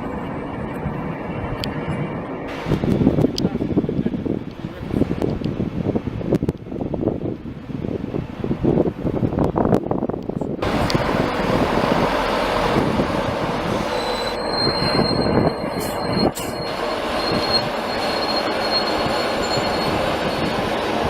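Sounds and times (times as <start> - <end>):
train wheels rumbling on rail: 0.0 - 21.0
high-pitched squeal: 10.7 - 21.0.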